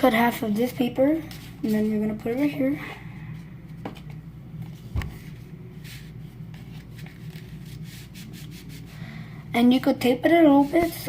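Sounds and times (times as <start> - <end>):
steady low hum: 0.0 - 11.0
paper rustling: 4.7 - 8.9.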